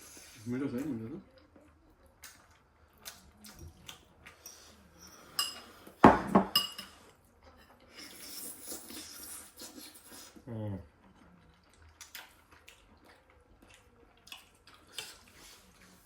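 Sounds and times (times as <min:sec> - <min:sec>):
cutlery clinking against bowls: 0:04.3 - 0:09.1.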